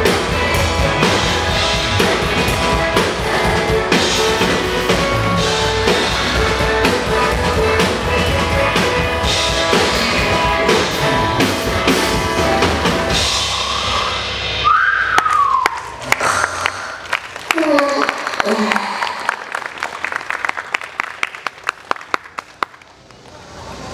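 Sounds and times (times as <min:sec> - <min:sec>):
drum kit played hard: 0:00.0 - 0:15.0
pop-rock backing track: 0:00.0 - 0:15.0
pitched call rising and falling: 0:13.4 - 0:16.0.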